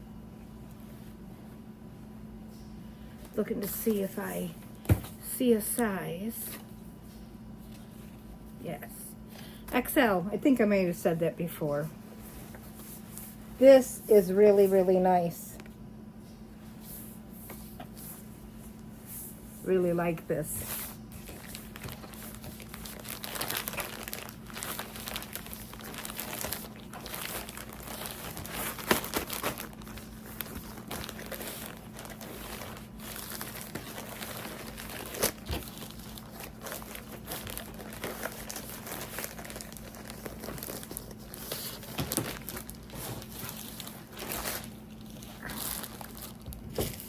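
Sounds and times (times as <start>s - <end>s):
faint steady hum: 0.0s - 47.0s
packaging crinkling and rustling: 20.6s - 47.0s.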